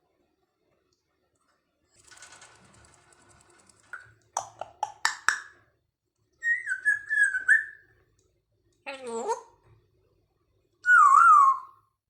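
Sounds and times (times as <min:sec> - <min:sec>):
parrot rattling: 0:02.0 - 0:05.5
parrot clicks: 0:04.0 - 0:05.5.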